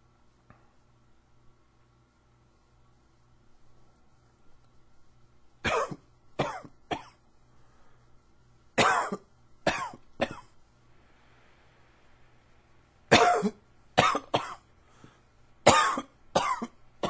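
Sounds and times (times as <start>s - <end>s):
man coughing: 5.7s - 7.2s, 8.8s - 10.5s, 13.1s - 14.6s, 15.7s - 16.8s.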